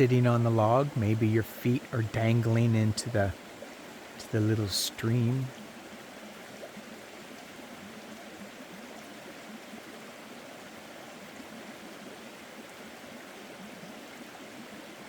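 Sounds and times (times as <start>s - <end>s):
stream babbling over rocks: 0.0s - 15.0s.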